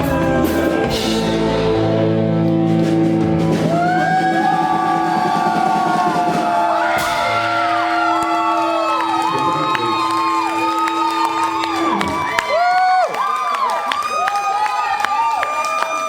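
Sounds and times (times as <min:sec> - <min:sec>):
live rock band playing: 0:00.0 - 0:08.6
drums: 0:00.0 - 0:13.3.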